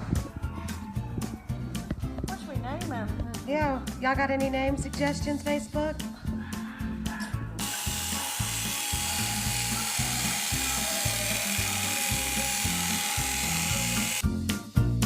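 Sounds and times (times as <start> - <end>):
electric clippers buzzing: 7.6 - 14.2.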